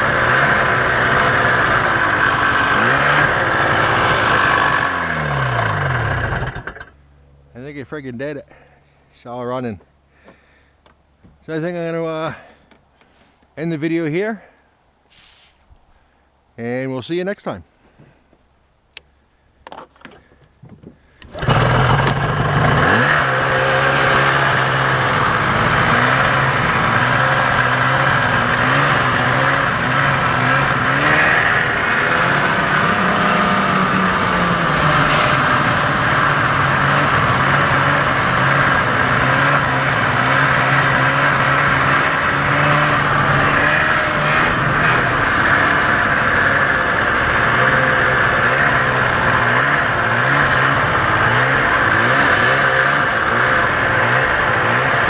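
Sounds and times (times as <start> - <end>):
two-stroke engine running: 0.0 - 7.6, 21.0 - 55.0.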